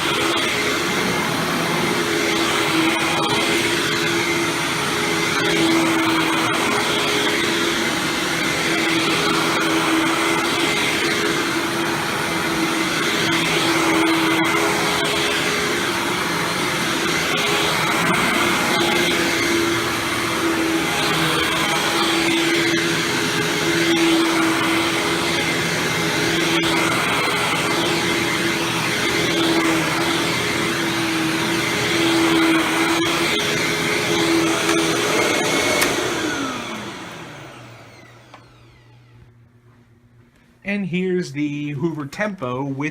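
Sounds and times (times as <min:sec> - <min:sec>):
vacuum cleaner running: 0:00.0 - 0:42.9
motor spinning down: 0:14.3 - 0:39.3.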